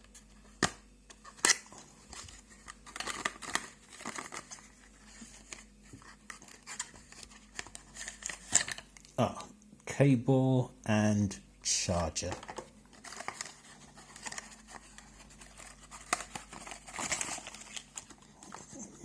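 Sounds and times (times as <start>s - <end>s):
plastic packaging crinkling: 1.2s - 9.1s, 12.2s - 18.8s.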